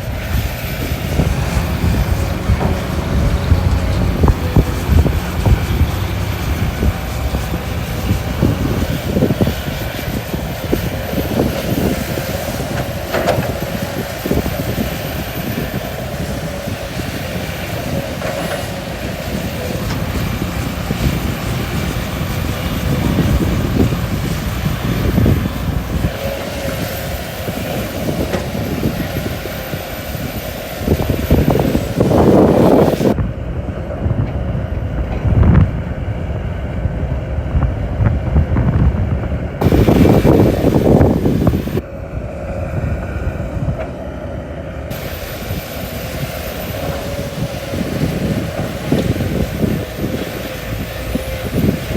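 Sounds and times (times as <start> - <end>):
excavator diesel engine: 0.0 - 51.9
hydraulics whining: 0.0 - 51.9.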